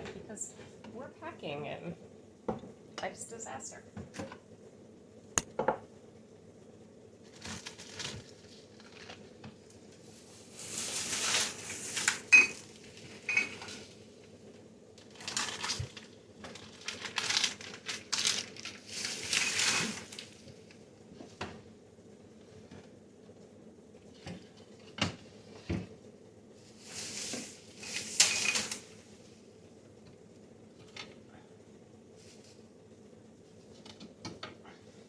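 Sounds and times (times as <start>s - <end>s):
refrigerator hum: 0.0s - 35.0s
rustling: 10.0s - 14.0s, 15.1s - 20.4s, 26.6s - 29.2s
glass jars and bottles clinking: 12.3s - 13.7s.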